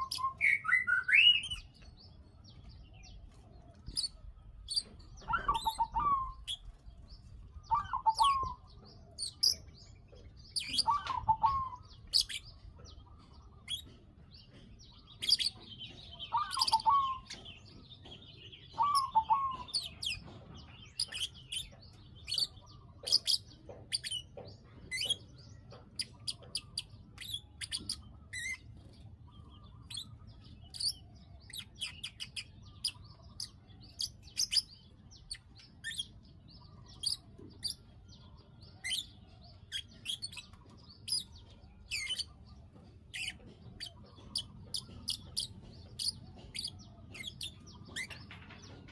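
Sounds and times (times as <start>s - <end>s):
bird low warbled notes: 3.9s - 9.7s.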